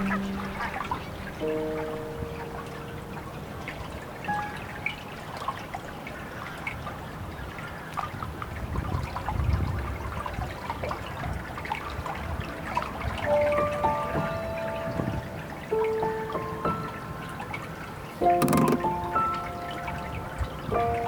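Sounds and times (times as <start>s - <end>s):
water dripping: 0.0s - 5.8s
water trickling and splashing: 0.0s - 21.0s.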